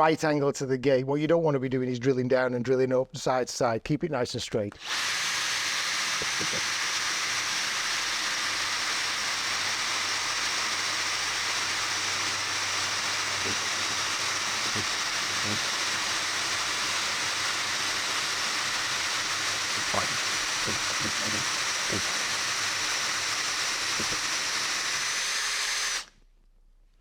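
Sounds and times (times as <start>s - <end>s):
power drill boring through wood: 4.7s - 26.2s.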